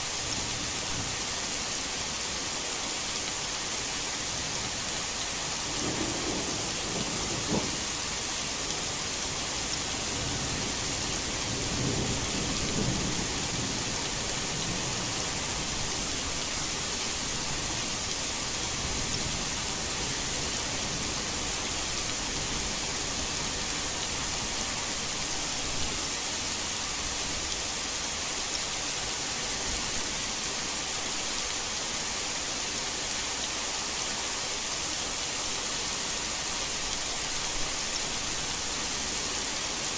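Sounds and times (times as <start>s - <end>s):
heavy rain: 0.0s - 39.9s
thunder rumbling: 5.8s - 7.8s.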